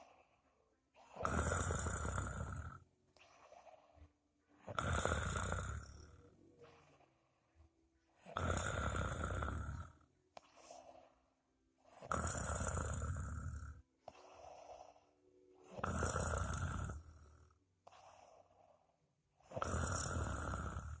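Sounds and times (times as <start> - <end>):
soft breathing: 0.0 - 2.2, 3.1 - 4.8, 5.8 - 8.3, 9.8 - 12.2, 13.9 - 16.4, 17.0 - 20.4
person snoring: 1.0 - 4.0, 4.6 - 7.1, 8.2 - 11.1, 11.8 - 18.8, 19.4 - 21.0.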